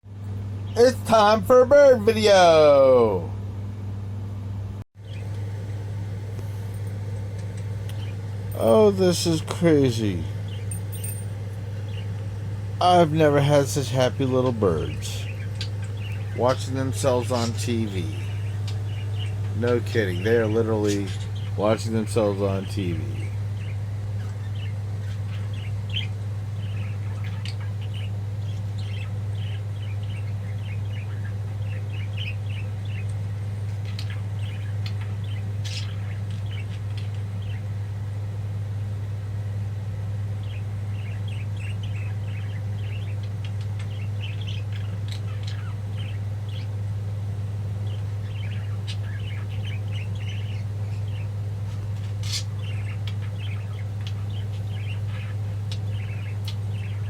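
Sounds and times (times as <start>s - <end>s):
steady low hum: 0.0s - 57.0s
budgies chirping and chattering: 7.4s - 37.9s, 40.3s - 57.0s.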